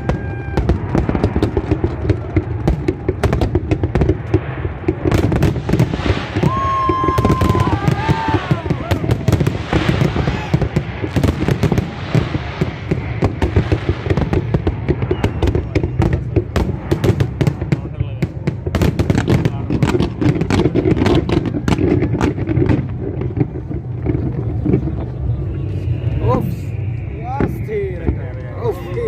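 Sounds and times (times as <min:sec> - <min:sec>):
fireworks crackling and booming: 0:00.0 - 0:29.0
low rumble: 0:00.0 - 0:29.0
high whistling tone: 0:15.0 - 0:16.0, 0:25.3 - 0:29.0.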